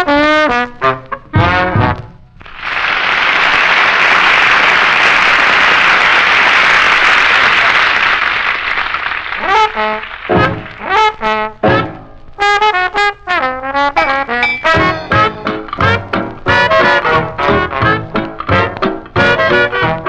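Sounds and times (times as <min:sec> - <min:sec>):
brass band horns: 0:00.0 - 0:02.7, 0:09.3 - 0:20.0
audience applauding: 0:02.4 - 0:11.3.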